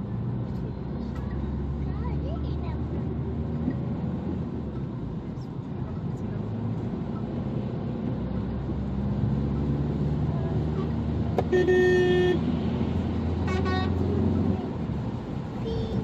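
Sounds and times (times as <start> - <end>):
car road and engine noise: 0.0 - 16.0
car horn: 11.4 - 12.5, 13.4 - 14.2.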